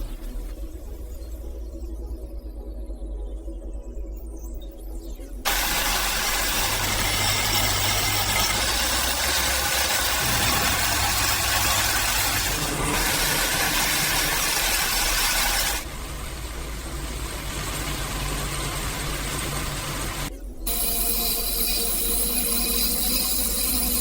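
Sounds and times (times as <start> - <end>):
low machine hum: 5.5 - 20.9
industrial machine hissing: 5.5 - 24.0.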